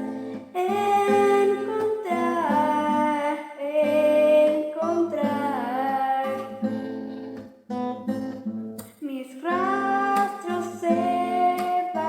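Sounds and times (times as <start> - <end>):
acoustic guitar plucked: 0.0 - 12.0
person singing long notes: 9.1 - 12.0.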